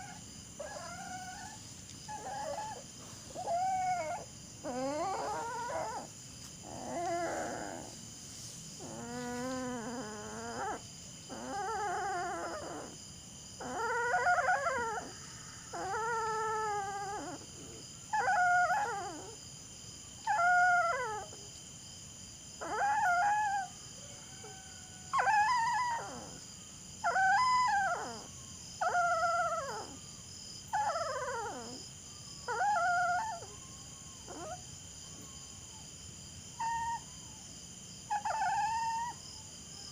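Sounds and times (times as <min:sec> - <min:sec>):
dog howling: 0:00.0 - 0:07.9, 0:08.8 - 0:13.0, 0:13.6 - 0:19.4, 0:20.2 - 0:21.4, 0:22.6 - 0:26.4, 0:27.0 - 0:30.0, 0:30.7 - 0:31.8, 0:32.5 - 0:34.6, 0:36.6 - 0:37.4, 0:38.1 - 0:39.2.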